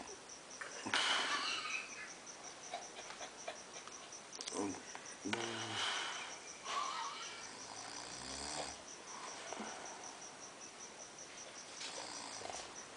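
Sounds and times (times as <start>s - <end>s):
faint high-pitched pulsing: 0.0s - 12.9s
person snoring: 4.5s - 10.1s, 11.8s - 12.7s.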